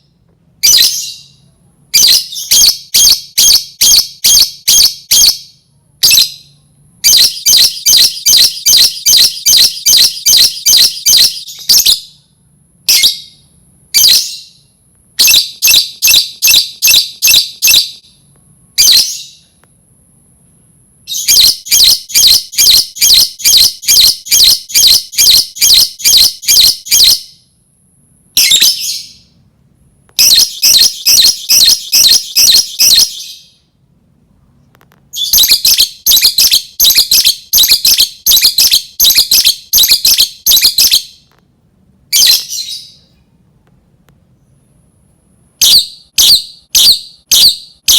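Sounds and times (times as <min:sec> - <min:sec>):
lovebird shrill chattering calls: 0:30.2 - 0:33.4.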